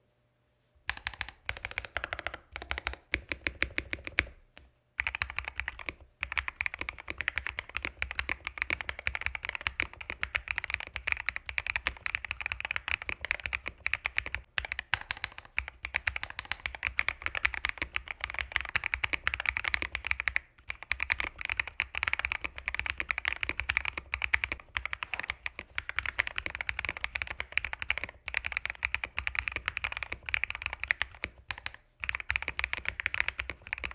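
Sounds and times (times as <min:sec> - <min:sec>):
mechanical keyboard typing: 0:00.9 - 0:04.4, 0:05.0 - 0:33.9.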